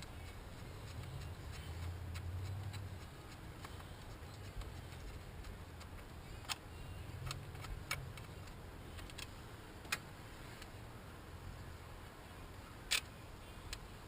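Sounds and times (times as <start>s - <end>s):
clicks and taps on engine parts: 0.0s - 6.6s
faint low hum: 0.0s - 14.0s.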